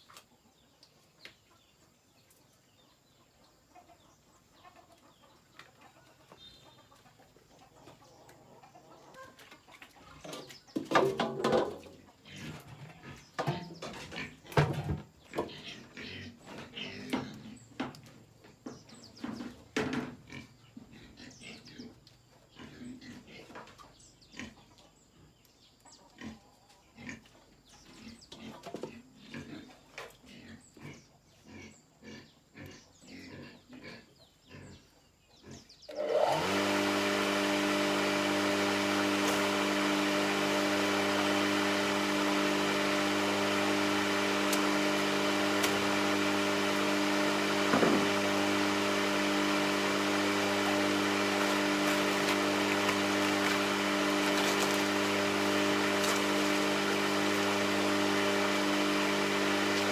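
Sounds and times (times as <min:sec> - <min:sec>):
motor humming: 0:35.9 - 0:59.9.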